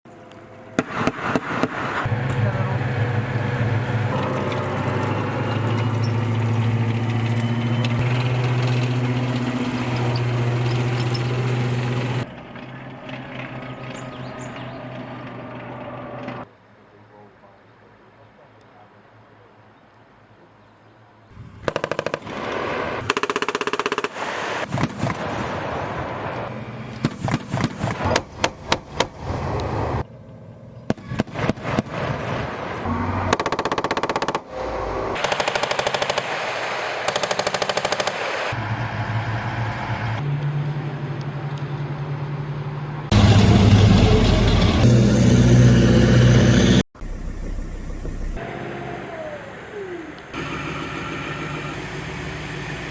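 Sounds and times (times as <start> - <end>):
automatic gunfire bursts: 21.7 - 22.4, 35.2 - 36.4.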